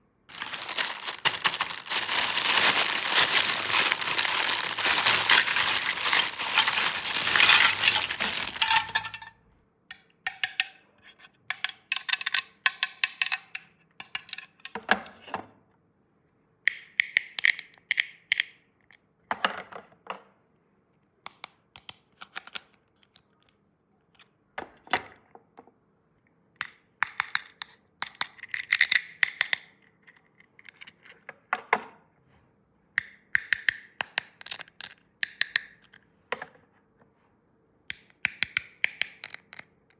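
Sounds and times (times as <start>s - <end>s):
plastic packaging crinkling: 0.3s - 9.3s
plastic toy pieces clicking: 37.9s - 39.7s.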